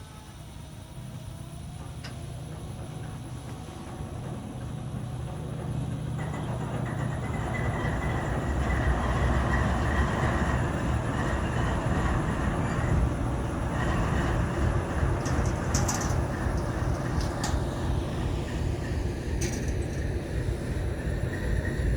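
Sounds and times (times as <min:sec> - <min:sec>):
diesel locomotive rumble: 0:00.0 - 0:21.9.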